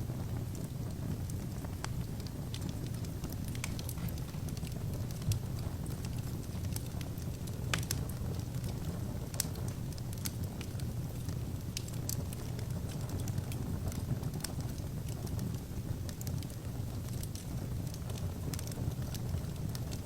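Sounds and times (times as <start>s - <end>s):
burning logs crackling and popping: 0.0s - 20.0s
fire flames rumbling: 0.0s - 20.0s.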